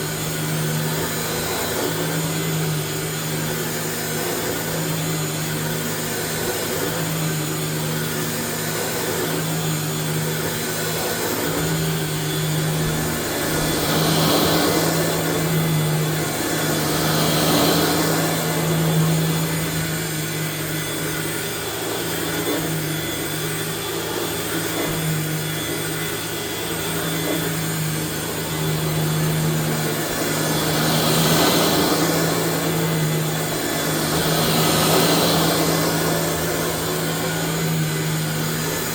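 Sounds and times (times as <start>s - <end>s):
vacuum cleaner motor humming: 0.0s - 38.9s.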